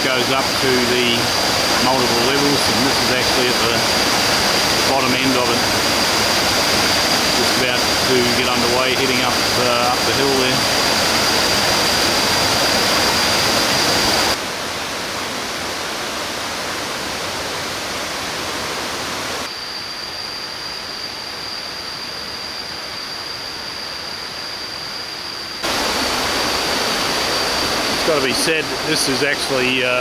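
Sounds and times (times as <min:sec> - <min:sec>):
waterfall rushing water: 0:00.0 - 0:19.5, 0:25.6 - 0:30.0
high-pitched whine: 0:00.0 - 0:30.0.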